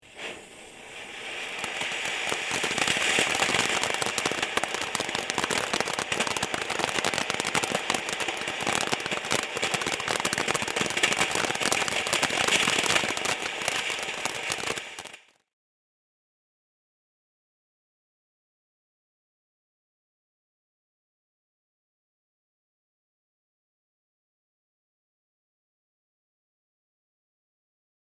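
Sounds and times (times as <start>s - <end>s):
firework fountain hissing and crackling: 0.0s - 15.4s.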